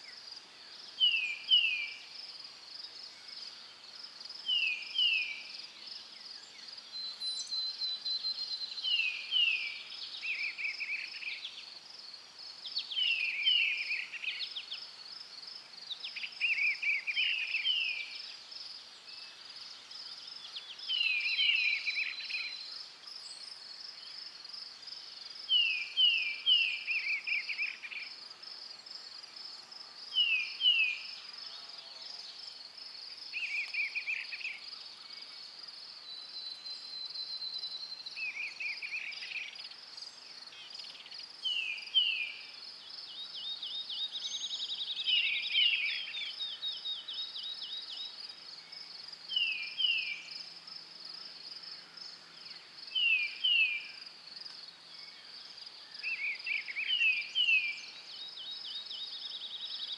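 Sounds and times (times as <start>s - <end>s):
high pulsing insect chorus: 0.0s - 59.9s.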